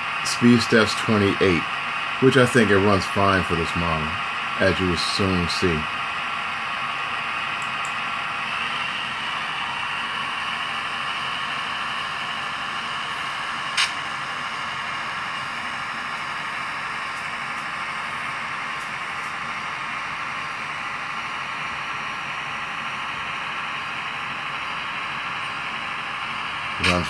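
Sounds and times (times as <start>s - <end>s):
model diesel engine sound: 0.0s - 27.0s
sharp click: 13.8s - 14.0s.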